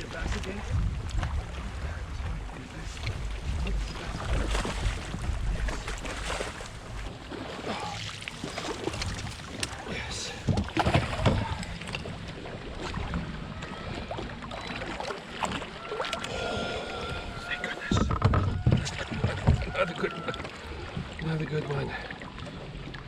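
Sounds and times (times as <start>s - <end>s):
wind rumbling on microphone: 0.0s - 7.4s, 16.3s - 21.2s
water slapping against kayak hull: 0.0s - 21.3s
splashes and knocks: 2.2s - 16.4s, 17.4s - 21.2s.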